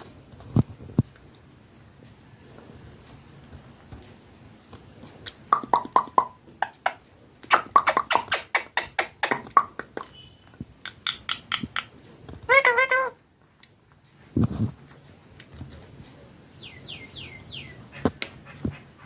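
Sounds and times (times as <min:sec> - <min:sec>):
parrot clicking and popping: 0:05.2 - 0:10.2, 0:10.8 - 0:12.7.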